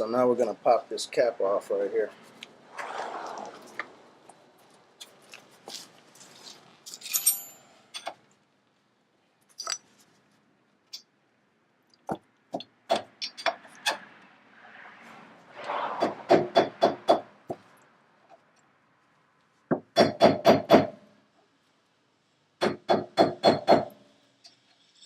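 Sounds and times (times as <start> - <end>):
ringing metallic clink: 6.9 - 7.7.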